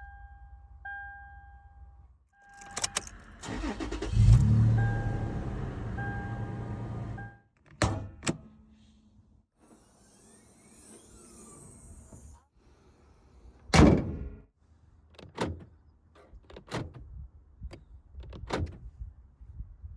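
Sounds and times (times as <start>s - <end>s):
car door thunk: 13.7s - 14.4s.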